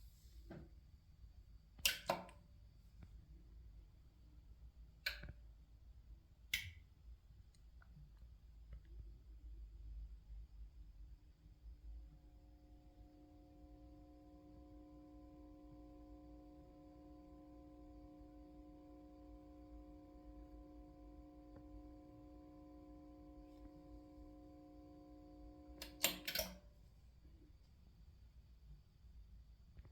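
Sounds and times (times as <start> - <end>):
amplifier hum: 9.6 - 28.8.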